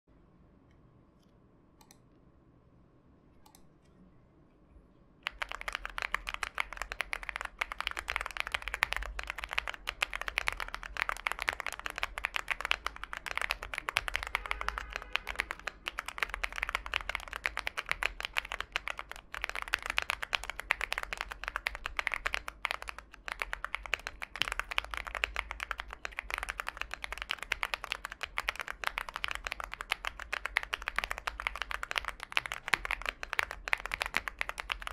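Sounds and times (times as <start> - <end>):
mechanical keyboard typing: 5.2 - 34.9.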